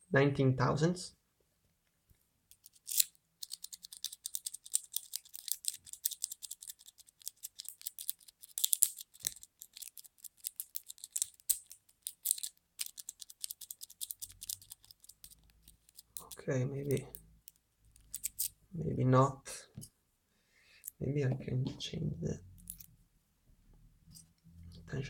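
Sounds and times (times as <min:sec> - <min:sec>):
lock pick clicking and scratching: 0:02.5 - 0:18.6, 0:22.6 - 0:22.9.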